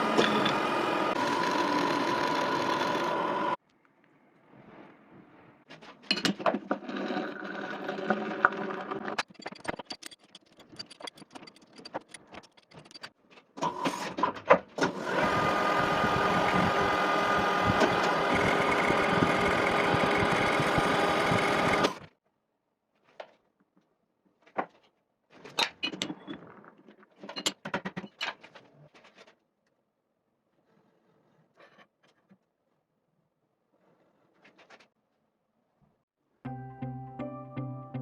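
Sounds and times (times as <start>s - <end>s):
lathe running: 0.0s - 3.6s, 15.0s - 22.0s.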